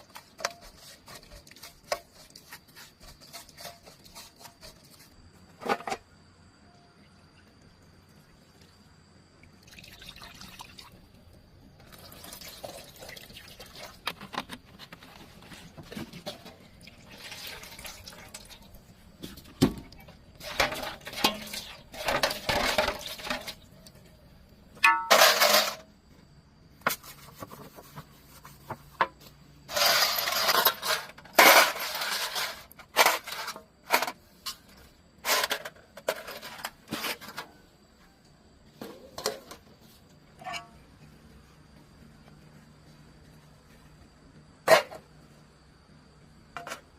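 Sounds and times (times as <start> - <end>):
metal tools clinking and scraping: 24.8 - 25.8, 29.7 - 37.6, 40.4 - 40.8.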